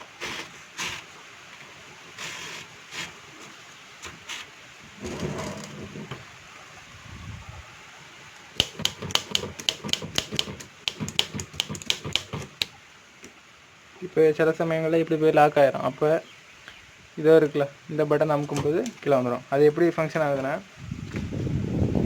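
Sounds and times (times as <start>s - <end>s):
typewriter keys striking: 8.6s - 12.7s
typewriter mechanism clicks: 8.6s - 12.8s.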